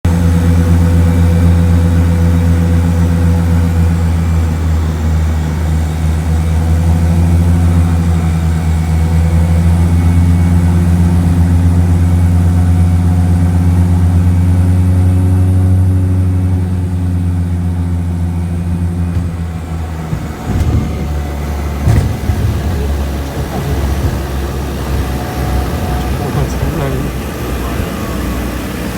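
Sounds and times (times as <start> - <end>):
airplane engines droning: 0.0 - 28.9
sharp knocks: 18.6 - 26.8.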